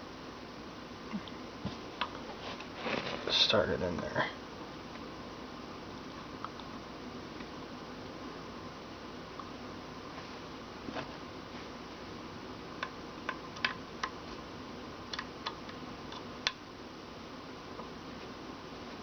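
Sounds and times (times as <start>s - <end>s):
steady low hiss: 0.0s - 19.0s.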